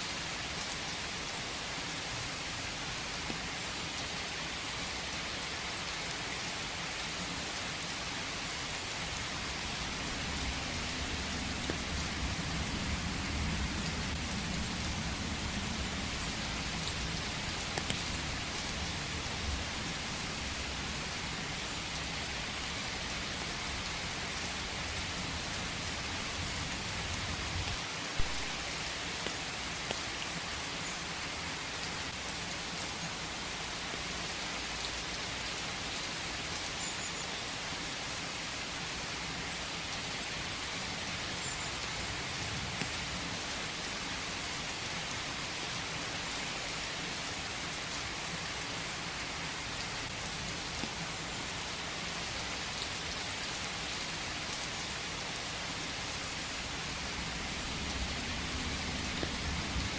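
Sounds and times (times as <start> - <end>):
rain falling in a forest: 0.0 - 59.9
raindrop ticks: 10.8 - 19.6, 27.6 - 30.1, 57.8 - 59.8.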